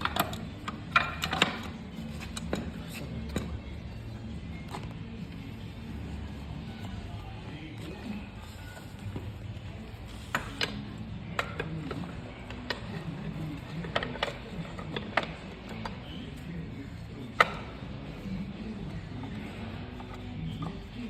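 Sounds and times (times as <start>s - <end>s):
metal tools clinking and knocking: 0.0s - 3.6s.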